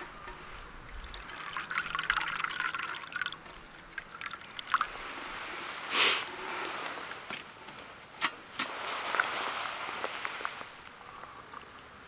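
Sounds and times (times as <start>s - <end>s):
liquid pouring and dripping: 0.0s - 5.2s.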